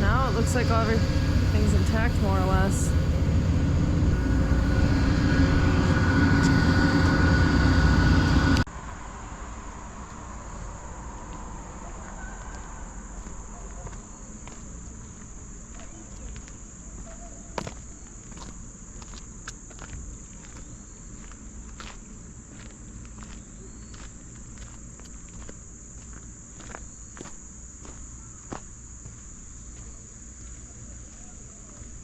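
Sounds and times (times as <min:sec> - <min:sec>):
engine rumbling: 0:00.0 - 0:13.5
crickets chirping: 0:00.0 - 0:32.0.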